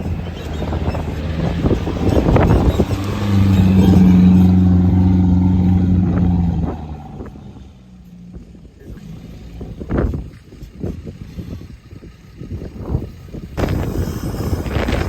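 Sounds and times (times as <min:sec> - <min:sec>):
vehicle engine running: 0:00.0 - 0:15.0.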